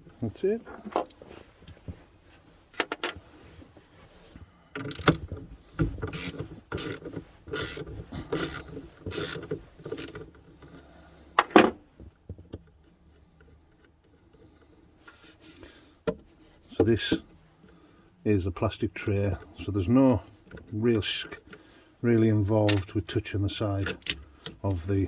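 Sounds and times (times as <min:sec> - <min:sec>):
ratchet wrench strokes: 0:06.1 - 0:10.2.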